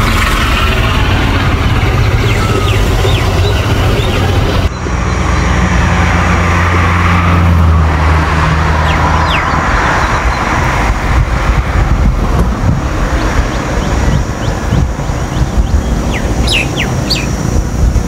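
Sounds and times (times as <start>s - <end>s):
noisy background: 0.0s - 18.0s
vehicle engine humming: 0.0s - 18.0s
faint bird chirps: 15.3s - 17.4s.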